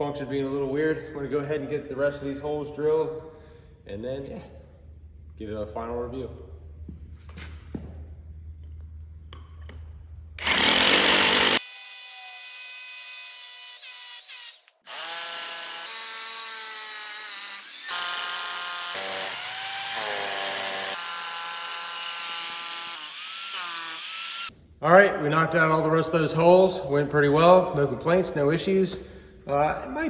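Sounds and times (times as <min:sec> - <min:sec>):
hammer drill drilling concrete: 0:10.4 - 0:24.5.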